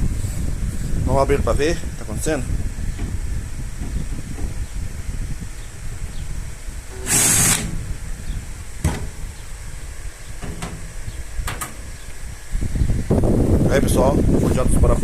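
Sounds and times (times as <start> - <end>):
power screwdriver running: 6.9 - 7.9.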